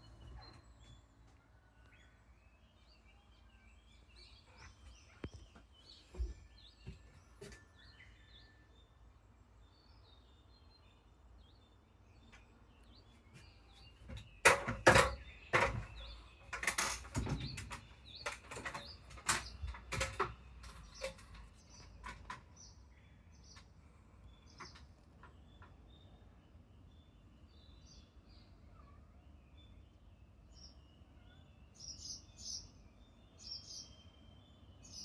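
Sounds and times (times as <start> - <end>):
loud knocks and rustles: 14.0 - 22.5.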